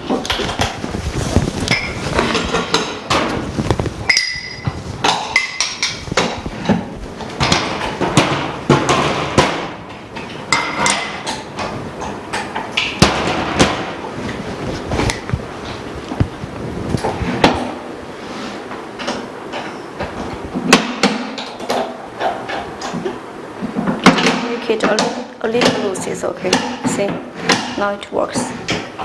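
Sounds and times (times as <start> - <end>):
short metallic rings: 4.1 - 4.7.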